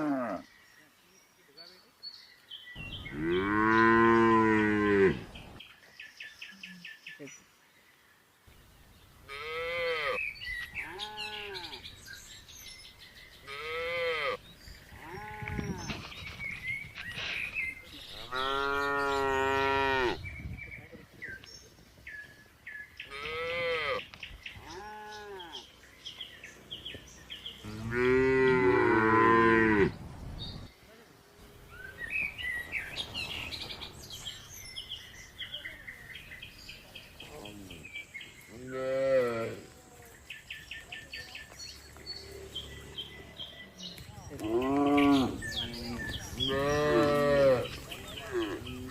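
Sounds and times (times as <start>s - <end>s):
faint birds chirping: 0.0s - 48.9s
cattle mooing: 27.6s - 29.9s, 44.5s - 48.9s.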